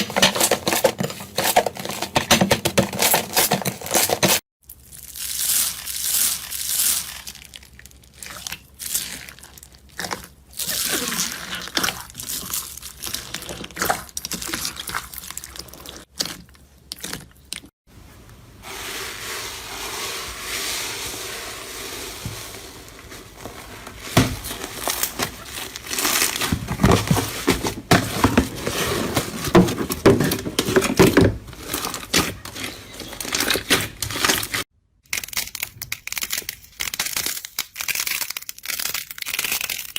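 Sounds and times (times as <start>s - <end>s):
slime squishing and crackling: 4.8s - 17.7s, 22.7s - 39.9s.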